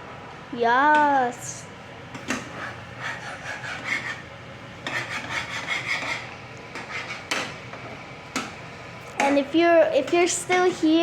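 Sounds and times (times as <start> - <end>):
spatula scraping a frying pan: 2.2 - 7.6.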